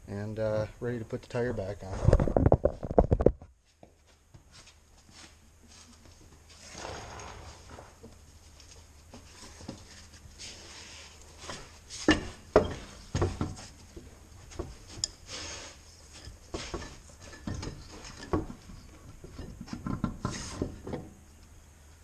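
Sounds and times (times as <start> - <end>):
metal clinks and knocks: 16.0 - 20.3.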